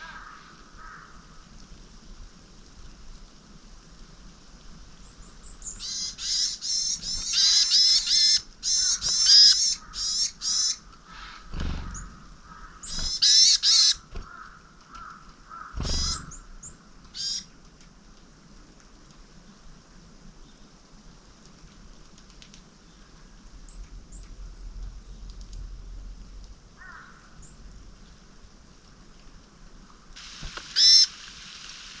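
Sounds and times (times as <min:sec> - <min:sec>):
small birds calling: 0:05.0 - 0:17.5, 0:30.3 - 0:31.2.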